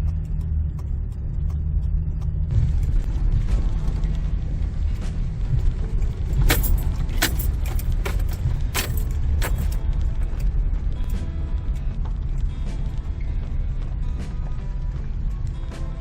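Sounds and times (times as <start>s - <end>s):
road rumble inside vehicle: 0.0s - 16.0s
loose items rattling: 6.3s - 9.8s.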